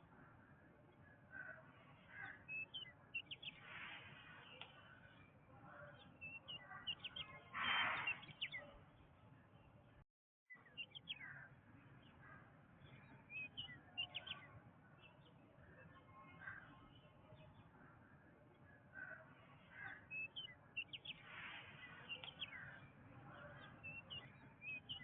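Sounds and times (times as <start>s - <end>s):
birds chirping: 0.0s - 9.9s, 10.5s - 25.0s
harsh bird call: 6.2s - 8.6s.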